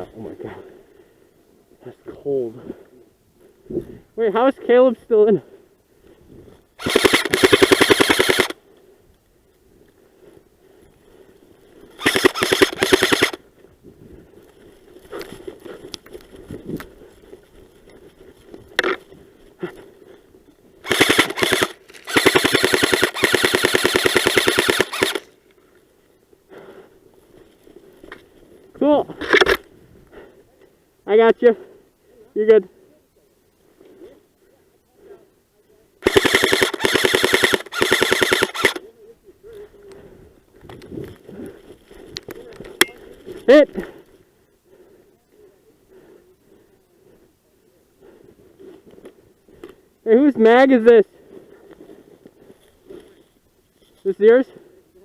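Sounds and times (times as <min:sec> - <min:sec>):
airsoft rifles firing bursts: 0:06.8 - 0:08.6, 0:12.0 - 0:13.4, 0:20.8 - 0:25.3, 0:36.0 - 0:38.8
lone clicks and pops: 0:40.6 - 0:43.4.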